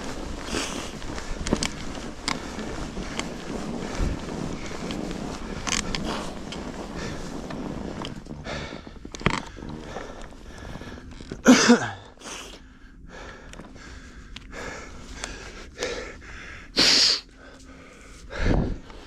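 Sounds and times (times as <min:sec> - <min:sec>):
person breathing hard: 0:00.3 - 0:04.8, 0:08.3 - 0:19.0
person grunting: 0:11.5 - 0:12.1.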